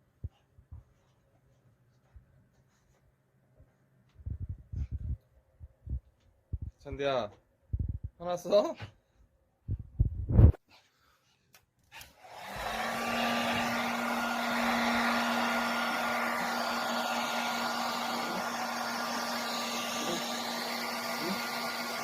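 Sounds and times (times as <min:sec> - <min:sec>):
hair dryer blowing: 0:12.0 - 0:22.0.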